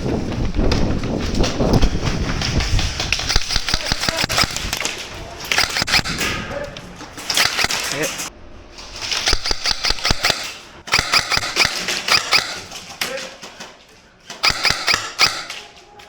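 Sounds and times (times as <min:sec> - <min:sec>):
airsoft guns firing: 0:03.0 - 0:06.5, 0:07.1 - 0:08.3, 0:09.1 - 0:13.0, 0:14.3 - 0:15.7.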